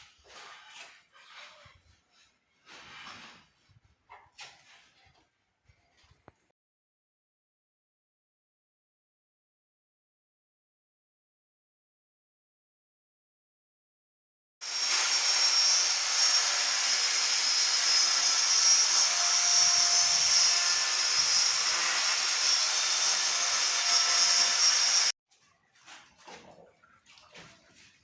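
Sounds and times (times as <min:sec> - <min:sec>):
faint scrapes: 0:00.0 - 0:06.2
power tool running: 0:14.6 - 0:25.1.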